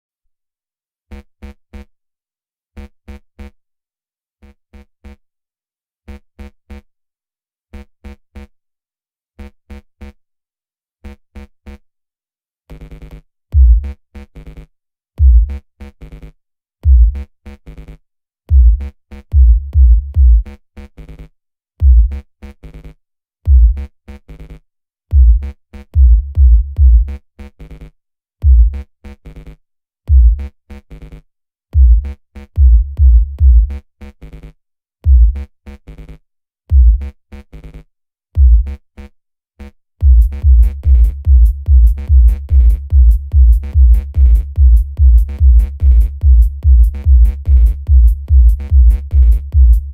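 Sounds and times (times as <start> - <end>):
bass-boosted electronic music: 40.0 - 49.9.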